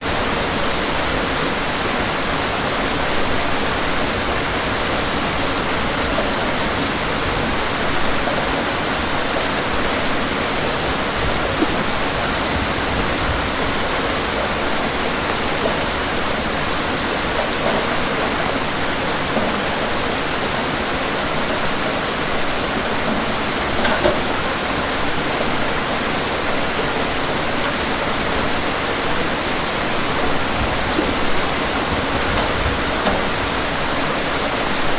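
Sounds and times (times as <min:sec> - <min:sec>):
steady rain hissing: 0:00.0 - 0:34.9.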